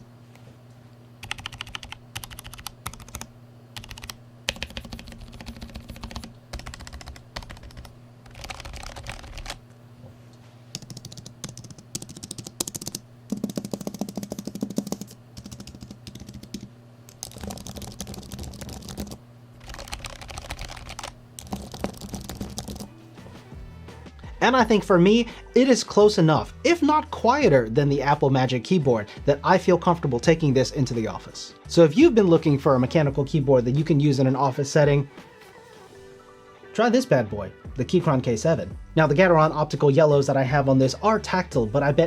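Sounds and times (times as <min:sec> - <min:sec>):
faint steady low hum: 0:00.0 - 0:35.1
keyboard typing clicks: 0:01.2 - 0:09.6, 0:10.8 - 0:22.9.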